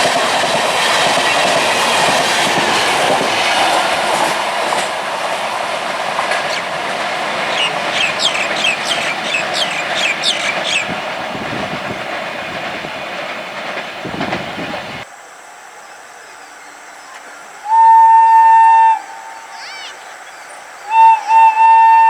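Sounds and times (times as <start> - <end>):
train wheels rushing on rail: 0.0 - 15.1, 20.8 - 22.0.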